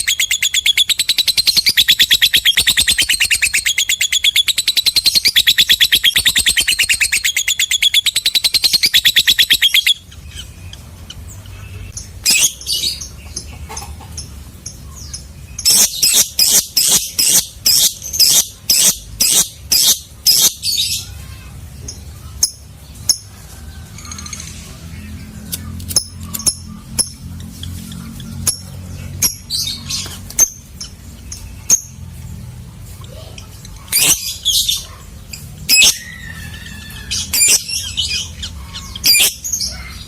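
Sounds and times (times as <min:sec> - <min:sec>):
lovebird call: 0:00.0 - 0:10.4
lovebird sharp chirps: 0:00.0 - 0:10.5, 0:15.6 - 0:20.7
lovebird chattering trill: 0:00.0 - 0:13.1, 0:13.7 - 0:21.4, 0:24.1 - 0:32.0, 0:33.0 - 0:40.0.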